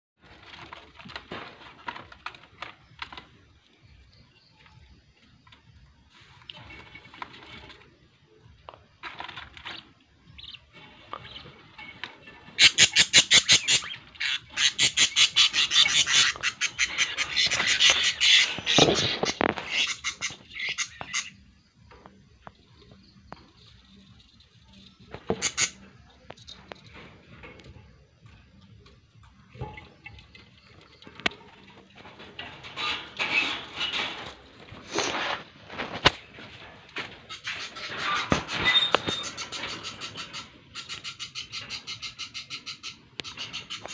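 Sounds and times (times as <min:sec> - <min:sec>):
budgerigars chattering: 0:10.4 - 0:21.4, 0:25.3 - 0:25.8, 0:37.2 - 0:43.9.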